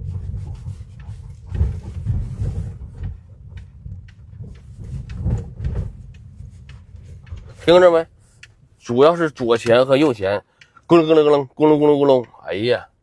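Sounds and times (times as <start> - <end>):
car cabin rumbling: 0.0 - 10.3
suspension clunks: 0.0 - 11.0.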